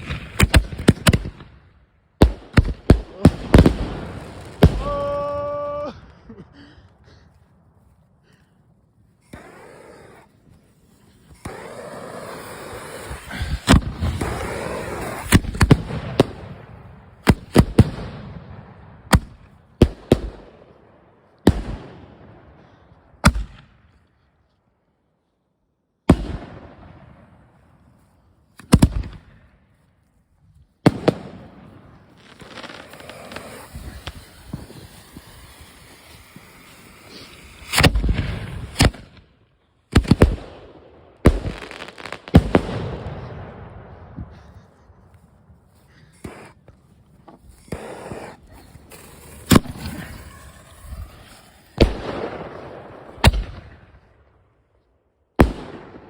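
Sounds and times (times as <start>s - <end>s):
fireworks bangs: 0.0s - 1.5s, 2.2s - 5.8s, 9.2s - 20.4s, 30.8s - 54.2s
fireworks hissing and crackling: 2.5s - 6.4s, 7.8s - 18.0s, 30.8s - 39.2s, 41.2s - 43.4s, 44.0s - 54.1s.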